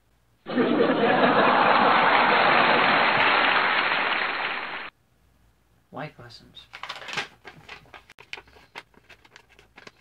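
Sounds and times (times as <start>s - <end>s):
applause and crowd: 1.5s - 4.9s.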